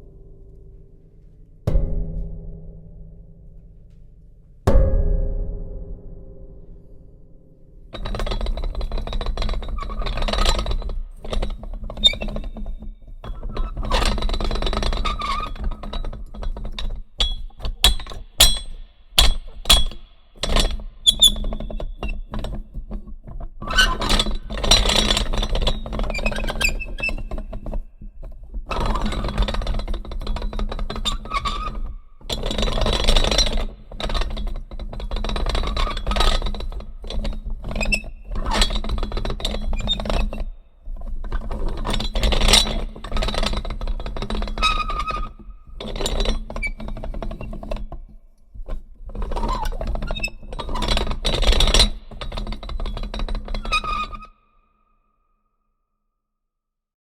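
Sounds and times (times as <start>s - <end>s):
metal gears whirring and ratcheting: 7.9s - 22.8s.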